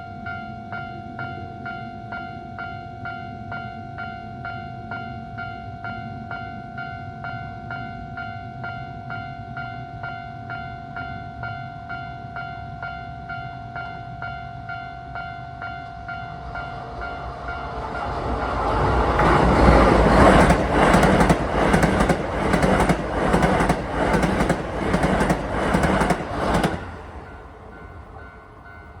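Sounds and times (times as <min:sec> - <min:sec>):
electric train passing: 0:13.7 - 0:29.0
train wheels clacking on rail joints: 0:17.9 - 0:27.2.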